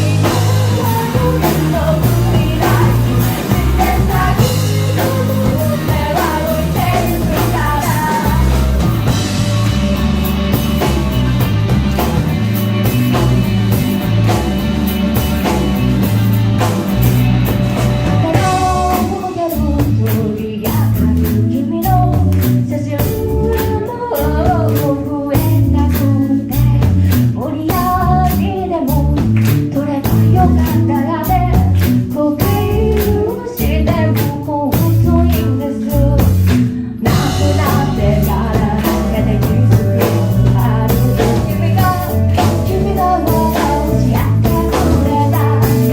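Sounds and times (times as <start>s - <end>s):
lead vocal singing: 0.0s - 12.3s, 37.0s - 45.9s
rock band playing: 0.0s - 45.9s.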